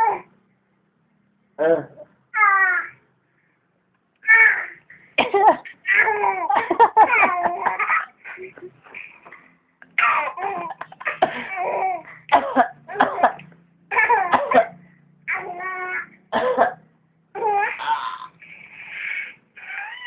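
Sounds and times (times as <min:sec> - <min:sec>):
person coughing: 0:05.2 - 0:05.7, 0:11.0 - 0:11.6, 0:12.3 - 0:13.4, 0:14.3 - 0:14.8, 0:16.4 - 0:16.8
baby laughing: 0:05.4 - 0:12.1.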